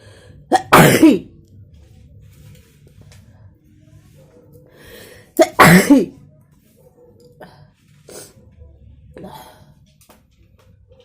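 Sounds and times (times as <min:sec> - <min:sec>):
person sneezing: 0:00.5 - 0:01.2, 0:05.4 - 0:06.1.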